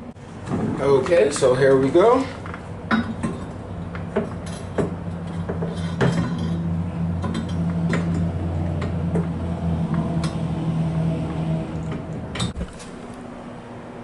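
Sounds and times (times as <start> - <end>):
steady low hum: 0.0 - 14.0
metal clinks and knocks: 2.4 - 9.3.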